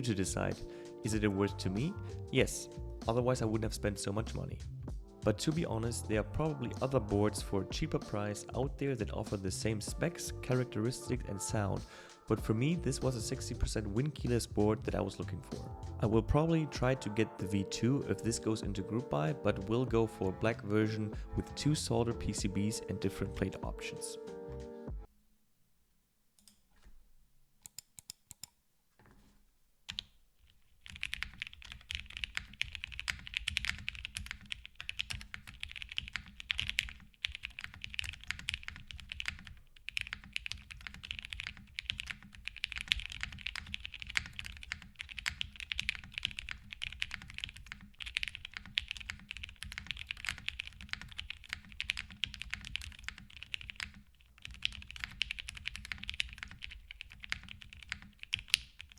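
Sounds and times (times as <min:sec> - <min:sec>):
mechanical keyboard typing: 0:30.8 - 0:58.9.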